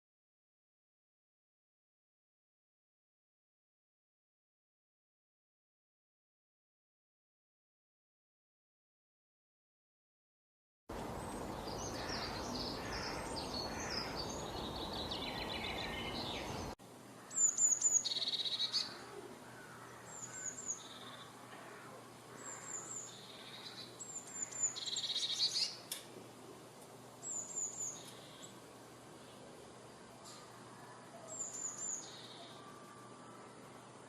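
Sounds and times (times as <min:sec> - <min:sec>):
birds chirping: 0:10.9 - 0:34.0.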